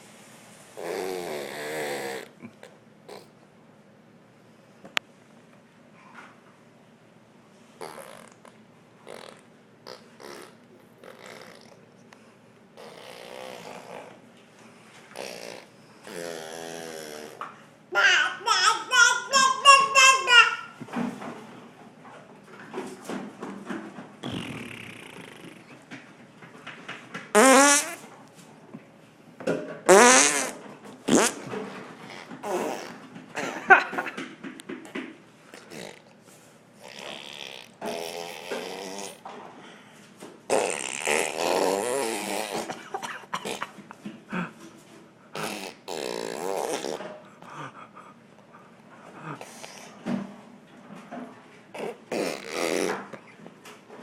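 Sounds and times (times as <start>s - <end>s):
baby blowing raspberries: 0.8s - 3.3s, 7.8s - 11.8s, 12.8s - 14.2s, 15.1s - 17.4s, 24.2s - 25.8s, 27.4s - 28.0s, 29.9s - 33.0s, 35.5s - 36.1s, 36.8s - 39.3s, 40.5s - 43.7s, 45.4s - 50.0s, 51.7s - 53.4s.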